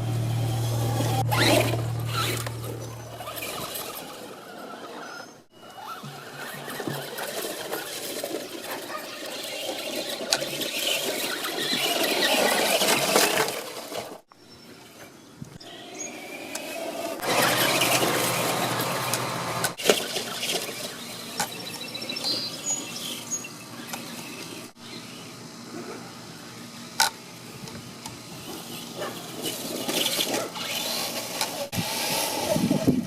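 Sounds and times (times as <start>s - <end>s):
rc truck motor running: 0.0s - 33.0s
tyres scrabbling over gravel: 6.1s - 14.2s.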